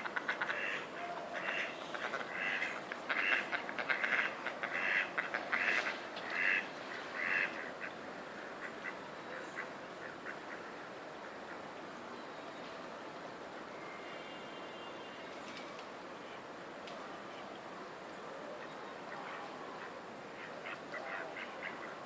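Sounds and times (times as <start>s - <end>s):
ducks quacking: 0.0s - 10.7s, 19.1s - 22.0s
steady background noise: 0.0s - 22.0s.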